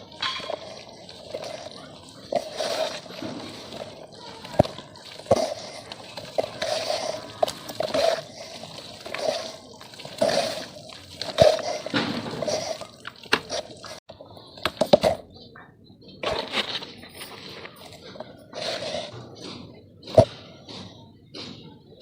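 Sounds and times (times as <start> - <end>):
wet splashes and sloshes: 0.0 - 14.0.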